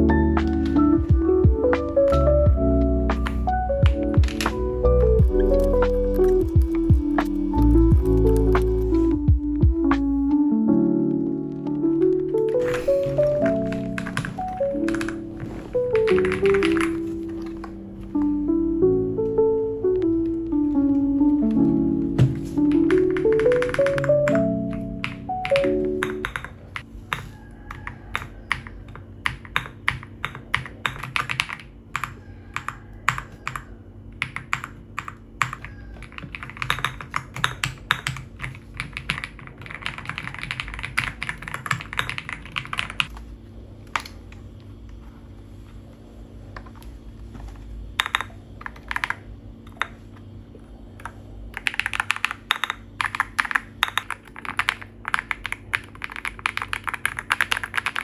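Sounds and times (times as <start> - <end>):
faint steady hum: 0.0 - 58.0
mechanical keyboard typing: 3.1 - 9.2, 12.1 - 18.3, 20.8 - 26.9, 27.7 - 43.1, 48.0 - 50.0, 51.0 - 58.0.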